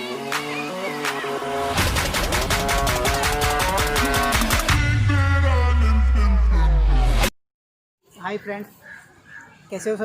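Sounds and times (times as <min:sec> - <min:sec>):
electronic music with fast beat: 0:00.0 - 0:06.3.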